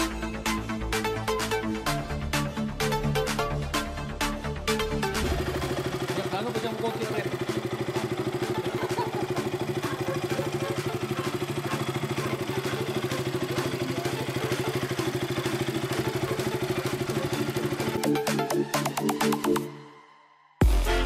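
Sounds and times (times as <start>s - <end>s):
motorcycle engine idling: 4.7s - 19.0s.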